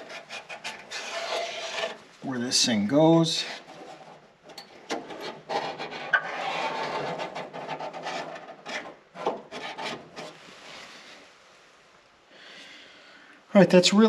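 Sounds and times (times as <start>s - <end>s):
marker scraping on sheet metal: 0.0s - 2.1s, 3.4s - 10.4s.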